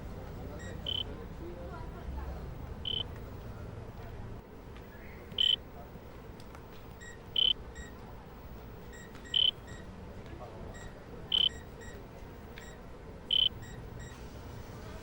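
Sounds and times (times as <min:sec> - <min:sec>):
medical monitor beeping: 0:00.5 - 0:01.2, 0:02.8 - 0:03.1, 0:05.3 - 0:05.6, 0:06.9 - 0:09.9, 0:10.7 - 0:14.2.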